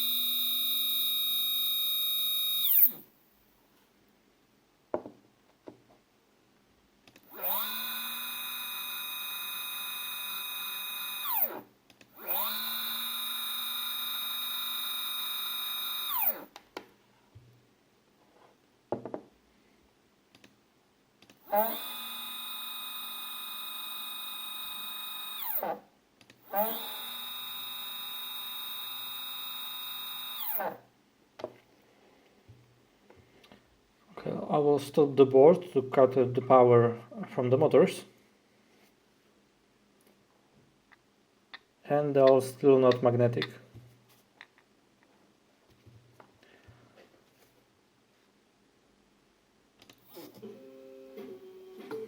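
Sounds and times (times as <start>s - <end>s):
stepper motors whining: 0.0s - 3.0s, 7.3s - 16.5s, 21.5s - 25.8s, 26.5s - 30.8s.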